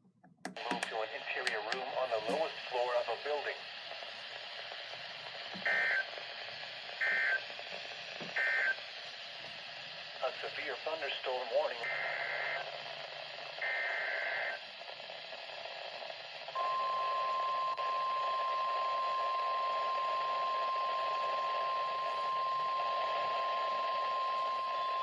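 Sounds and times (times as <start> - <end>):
radio hiss: 0.5 - 16.7, 18.4 - 25.0
long warning alarm beep: 16.6 - 25.0.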